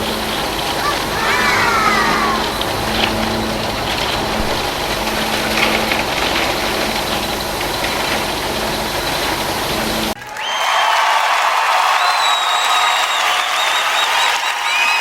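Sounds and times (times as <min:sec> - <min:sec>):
heavy machine engine idling: 0:00.0 - 0:10.2.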